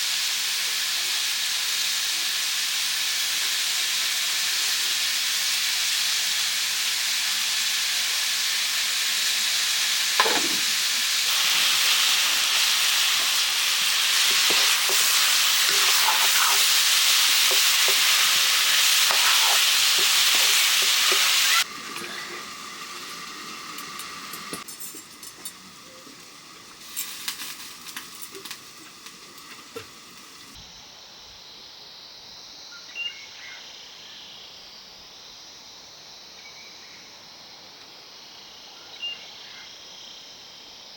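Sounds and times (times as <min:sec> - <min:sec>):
food sizzling in pan: 0:00.0 - 0:30.6
stirring taps and scrapes: 0:14.1 - 0:21.4.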